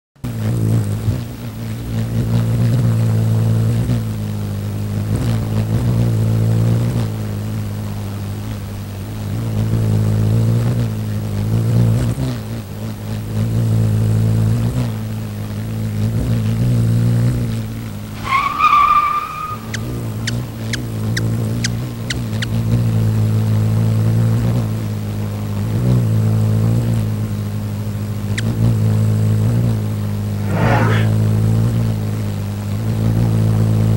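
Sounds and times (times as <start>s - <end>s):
short high squeal: 18.1s - 20.4s, 30.4s - 31.2s.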